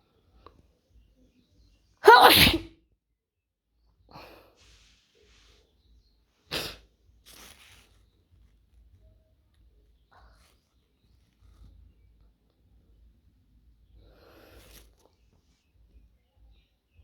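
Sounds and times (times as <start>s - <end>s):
person sneezing: 2.0s - 2.7s, 6.5s - 6.8s.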